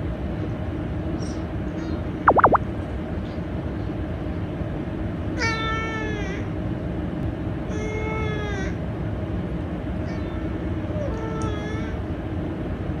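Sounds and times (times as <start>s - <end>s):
short sweeping chirp: 2.3s - 2.6s.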